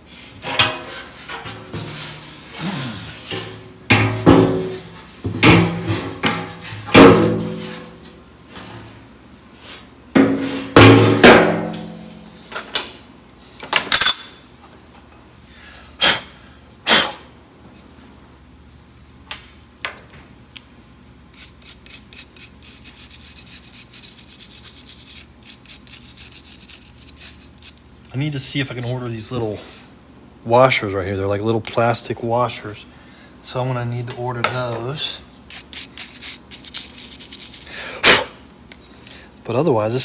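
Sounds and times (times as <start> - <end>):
knocks and clanks on metal: 0.4 - 2.1, 3.3 - 7.8, 10.2 - 12.9.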